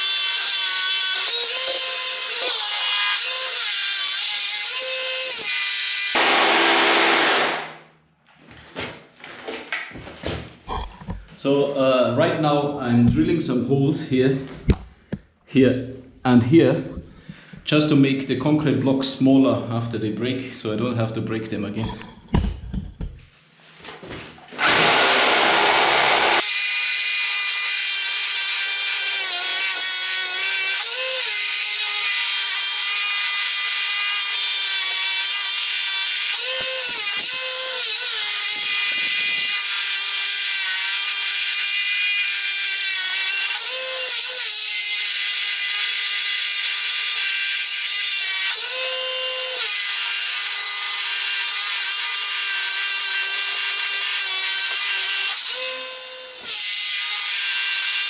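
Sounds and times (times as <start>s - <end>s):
power drill boring into concrete: 0.0s - 7.8s, 24.6s - 58.0s.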